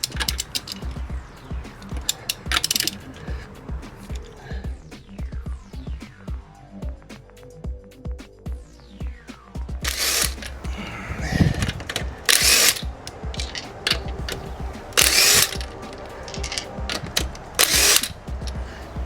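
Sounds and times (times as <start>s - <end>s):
light mechanical clicking: 0.0s - 1.0s
impact wrench bursts: 0.0s - 4.2s, 9.8s - 18.8s.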